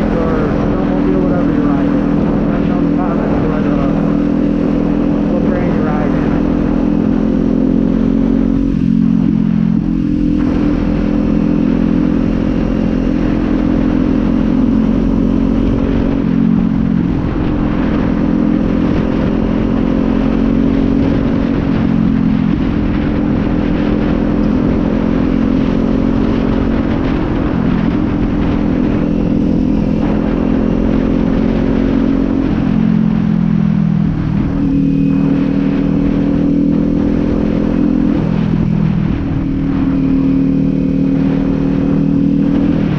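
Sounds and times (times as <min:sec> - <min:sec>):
motorcycle engine running: 0:00.0 - 0:42.9.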